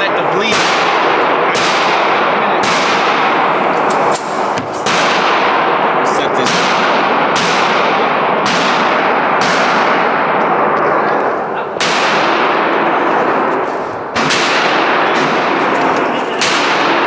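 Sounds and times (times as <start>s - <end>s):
gunshots with ringing tail: 0.0s - 17.0s.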